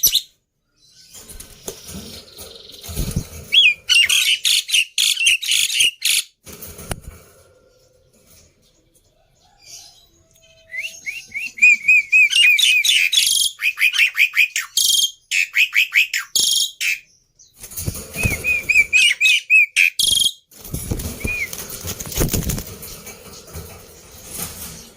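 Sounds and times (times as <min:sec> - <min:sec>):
rustling wing flutter: 0:01.2 - 0:03.7, 0:17.6 - 0:18.9, 0:20.6 - 0:24.9
starling calling: 0:18.1 - 0:20.4.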